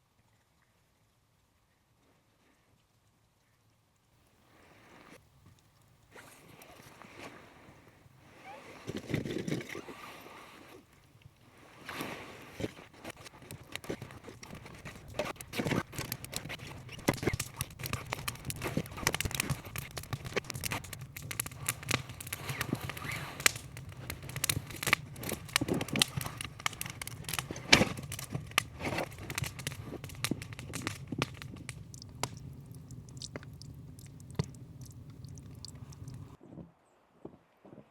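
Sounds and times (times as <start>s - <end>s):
wood fire crackling: 10.9s - 36.4s.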